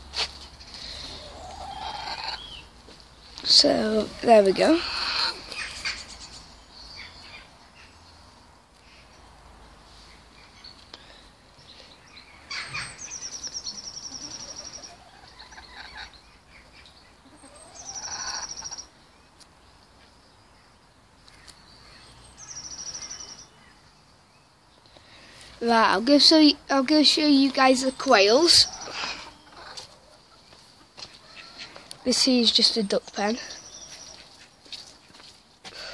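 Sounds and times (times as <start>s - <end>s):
faint bird chirps: 10.0s - 25.2s
songbird singing trills: 11.6s - 25.1s, 27.4s - 29.7s, 31.2s - 34.4s.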